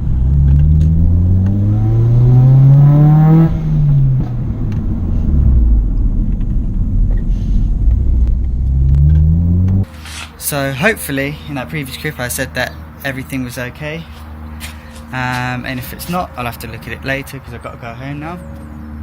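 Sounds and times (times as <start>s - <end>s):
car engine accelerating: 0.0s - 9.9s
road rumble: 0.0s - 19.0s.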